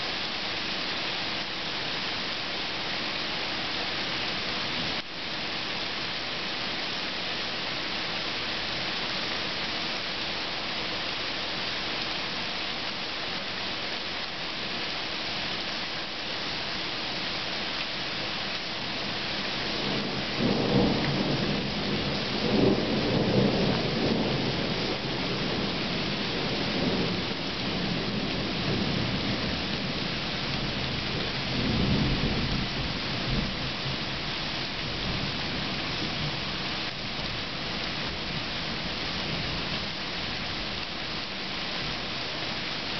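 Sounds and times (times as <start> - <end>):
rain hissing: 0.0 - 42.9
thunder rumbling: 19.8 - 29.7.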